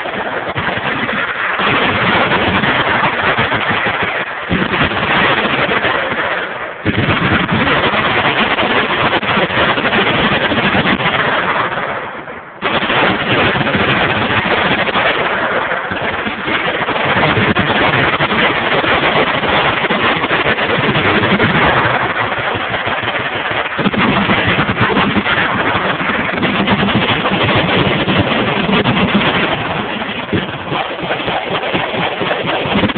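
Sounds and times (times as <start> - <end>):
machine guns firing: 0.0 - 32.9.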